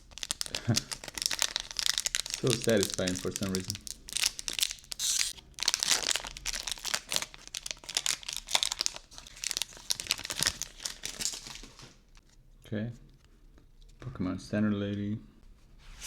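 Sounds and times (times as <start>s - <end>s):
foil wrapper crinkling and tearing: 0.0s - 12.1s.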